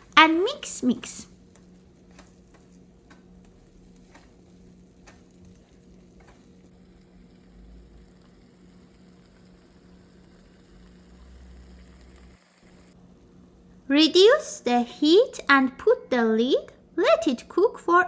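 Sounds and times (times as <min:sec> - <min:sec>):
food frying in a pan: 0:00.0 - 0:13.8
steady low hum: 0:00.0 - 0:15.5
utensil clicking against pan: 0:01.4 - 0:06.7.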